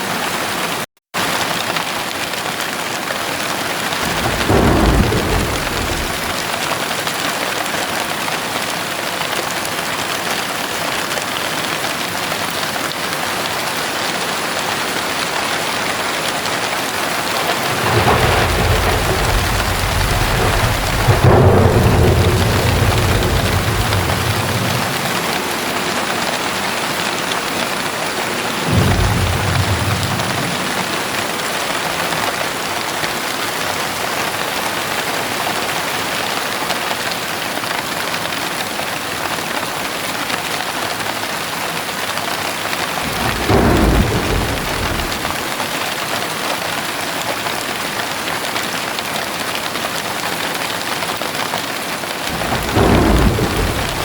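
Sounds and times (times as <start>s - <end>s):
heavy rain pattering: 0.0s - 54.0s
thunder rumbling: 3.9s - 6.8s, 15.2s - 32.5s, 43.0s - 45.7s, 52.3s - 54.0s.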